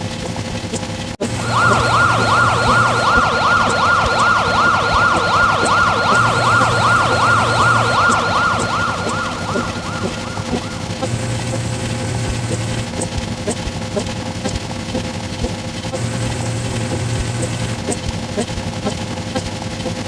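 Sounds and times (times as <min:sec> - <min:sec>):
siren yelping: 0:01.2 - 0:11.7.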